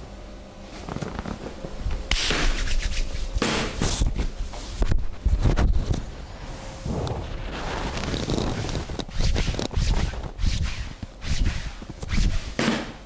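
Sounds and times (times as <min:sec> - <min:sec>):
sharp clicks and slaps: 0:02.1 - 0:02.7
hands rubbing skin: 0:02.1 - 0:04.8.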